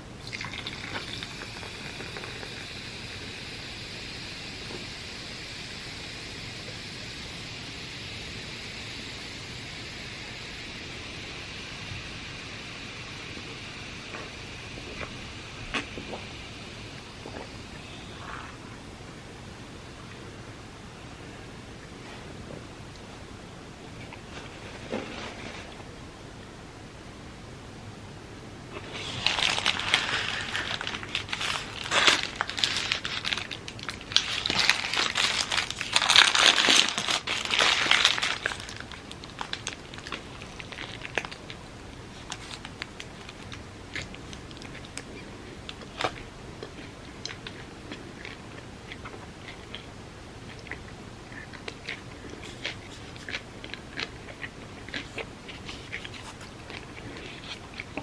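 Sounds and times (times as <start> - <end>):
crunching food: 28.7 - 58.0
food wrapper crinkling: 28.8 - 44.8
chewing: 28.8 - 58.0.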